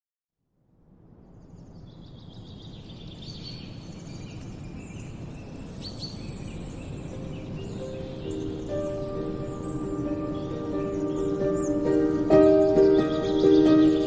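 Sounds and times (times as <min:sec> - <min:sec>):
high chirping calls: 0:02.0 - 0:14.0
waterfall rushing: 0:07.9 - 0:14.0.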